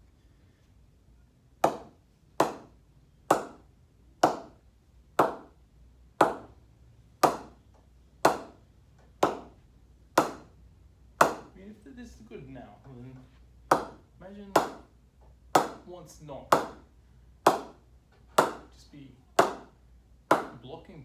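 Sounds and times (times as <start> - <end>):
ball striking cricket bat: 1.6 - 4.6, 5.2 - 5.6, 6.2 - 6.6, 7.2 - 7.6, 8.2 - 8.6, 9.2 - 9.6, 10.2 - 10.6, 11.2 - 11.6, 13.7 - 14.0, 14.6 - 14.9, 15.6 - 15.8, 16.5 - 16.8, 17.5 - 18.7, 19.4 - 20.6.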